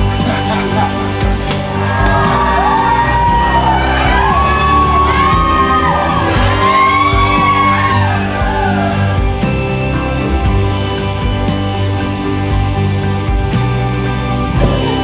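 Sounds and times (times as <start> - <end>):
singing-like voice: 0.0 - 10.5, 14.6 - 15.0.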